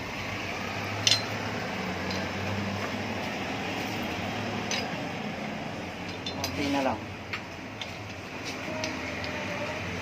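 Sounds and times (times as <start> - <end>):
sharp metallic clink: 1.0 - 1.4.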